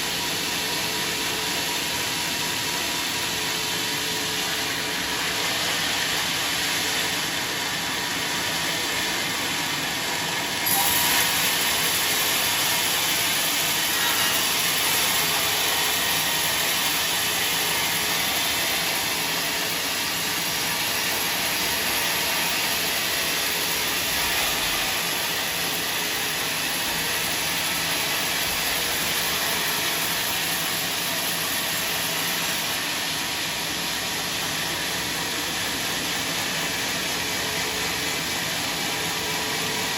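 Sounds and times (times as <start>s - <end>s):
sawmill machinery hissing: 0.0s - 39.9s.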